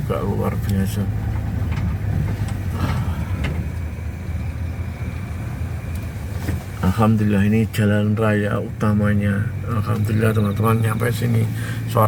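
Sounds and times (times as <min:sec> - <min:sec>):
vehicle engine and road rumble: 0:00.0 - 0:12.0.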